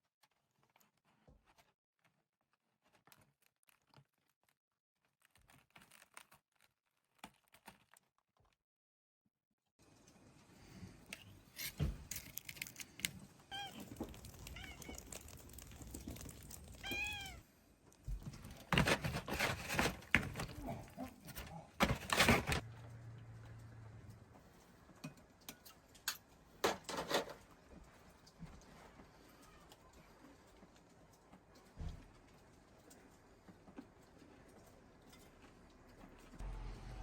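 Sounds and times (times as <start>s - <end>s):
cat crying: 13.5s - 15.3s, 16.7s - 17.4s.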